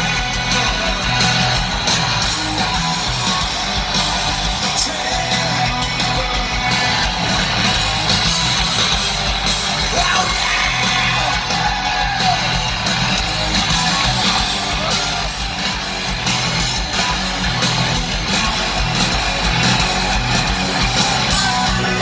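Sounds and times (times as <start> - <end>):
drums: 0.0 - 22.0
electric guitars: 0.0 - 22.0
person yelling singing: 4.6 - 7.5, 9.8 - 12.6, 21.2 - 22.0.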